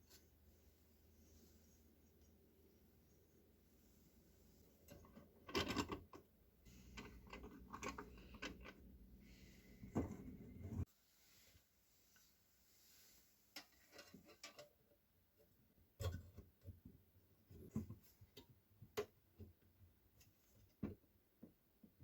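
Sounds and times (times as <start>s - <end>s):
small parts clicking and knocking: 4.9s - 9.0s.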